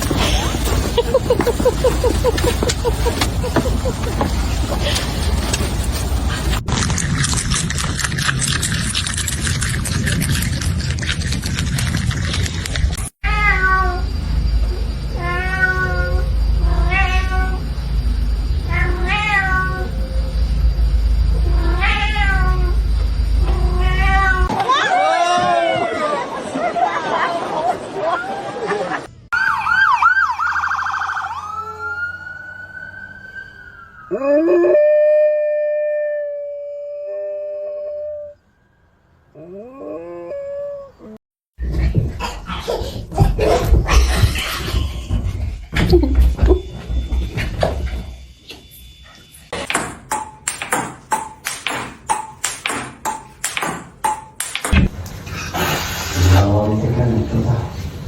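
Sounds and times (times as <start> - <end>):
electronic siren wailing and yelping: 29.3 - 36.3
dog howling: 34.0 - 38.4, 39.4 - 41.2.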